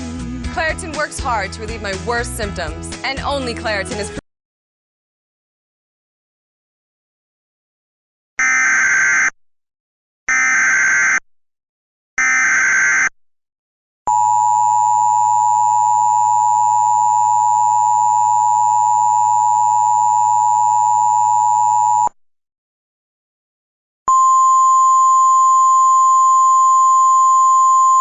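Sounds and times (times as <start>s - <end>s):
steady two-tone alarm: 8.4s - 9.3s, 10.3s - 11.2s, 12.2s - 13.1s.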